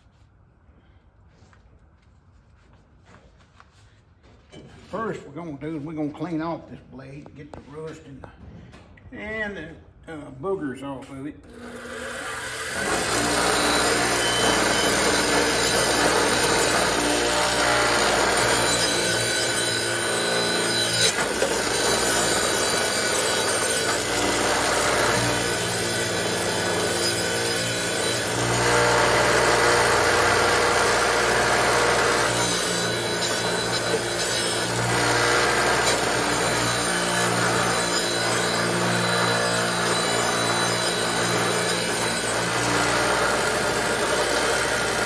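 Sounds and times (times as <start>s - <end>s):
power tool scraping rust off metal: 11.5s - 45.0s.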